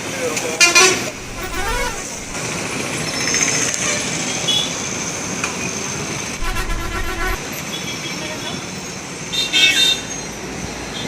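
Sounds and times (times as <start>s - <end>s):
traffic noise: 0.0s - 11.0s
car horn toot: 1.1s - 2.4s, 6.4s - 7.4s
vehicle engine running: 1.1s - 2.4s, 6.4s - 7.4s.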